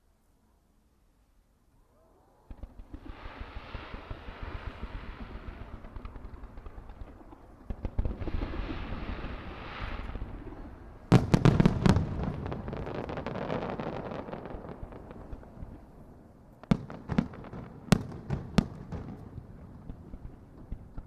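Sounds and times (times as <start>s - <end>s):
fireworks loud bangs: 2.5s - 15.8s
fireworks crackling: 2.5s - 21.0s.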